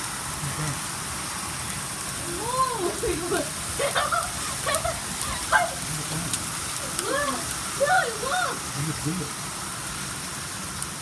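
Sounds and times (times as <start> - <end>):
hailstones ticking: 0.0 - 11.0
heavy rain: 0.0 - 11.0.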